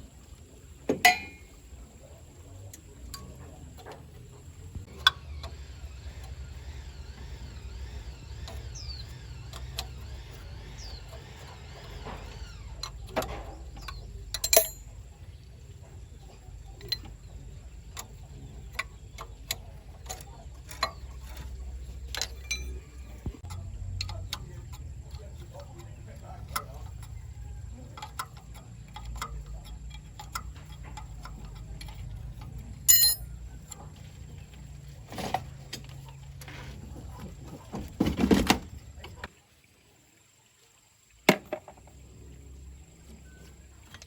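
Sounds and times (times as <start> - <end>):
clicks and knocks of hand work: 10.8 - 15.0, 16.4 - 39.3.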